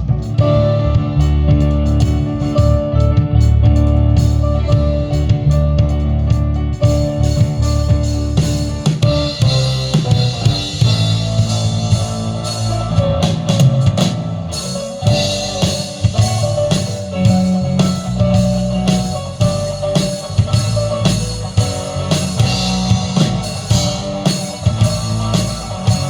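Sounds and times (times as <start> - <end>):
bass line: 0.0 - 26.0
drum kit beat: 0.0 - 26.0
sustained pitched notes: 0.0 - 26.0.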